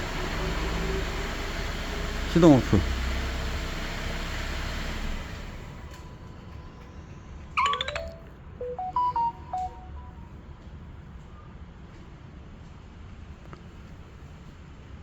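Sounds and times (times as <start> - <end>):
engine shutting off: 0.0 - 6.1
electronic jingle beeps: 7.6 - 10.3.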